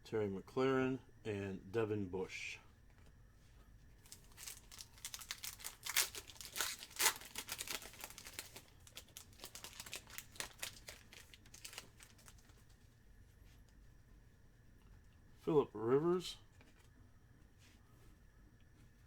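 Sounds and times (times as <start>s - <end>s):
plastic wrapper crinkling and tearing: 4.0s - 12.7s.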